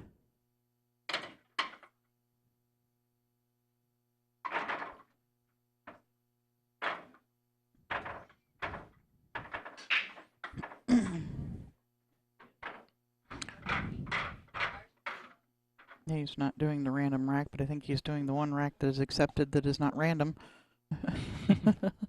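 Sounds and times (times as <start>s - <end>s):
pool balls clacking: 1.1s - 2.0s, 4.4s - 5.2s, 6.8s - 10.9s, 12.4s - 16.0s
pool balls rolling: 1.1s - 2.0s, 4.4s - 5.2s, 6.8s - 10.9s, 12.4s - 16.0s.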